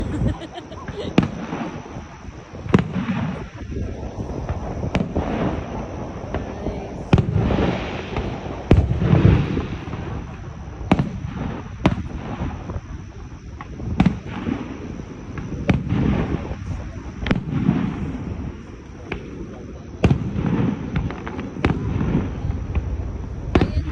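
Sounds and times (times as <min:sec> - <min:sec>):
fireworks bursting with crackling: 0:00.0 - 0:23.9.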